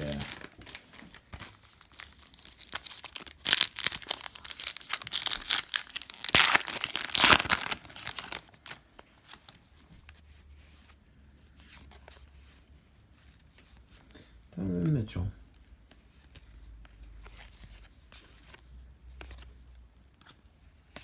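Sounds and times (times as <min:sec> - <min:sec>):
plastic wrapper tearing and crinkling: 0:00.0 - 0:08.9.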